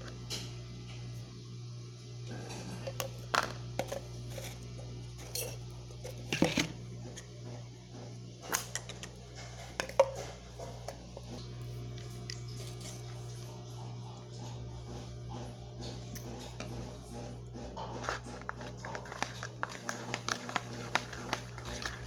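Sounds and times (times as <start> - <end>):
spoon and containers clicking: 18.0 - 22.0.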